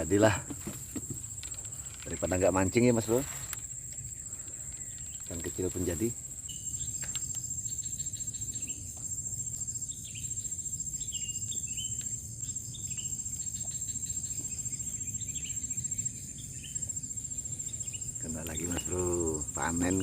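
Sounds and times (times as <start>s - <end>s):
pulsing trill of crickets: 0.0s - 20.0s.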